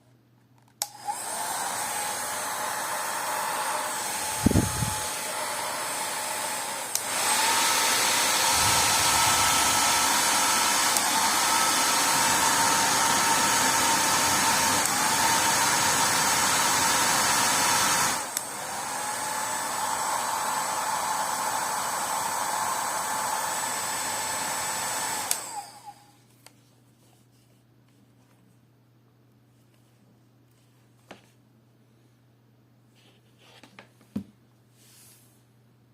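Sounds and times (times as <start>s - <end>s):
hair dryer blowing: 0.8s - 26.2s.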